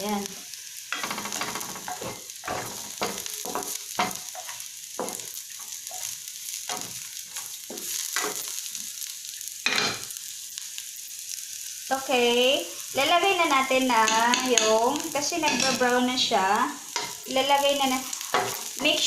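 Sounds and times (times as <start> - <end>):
garlic and onions sizzling in oil: 0.0 - 19.0
spatula scraping pan: 0.9 - 8.6, 14.0 - 16.1, 16.9 - 19.0.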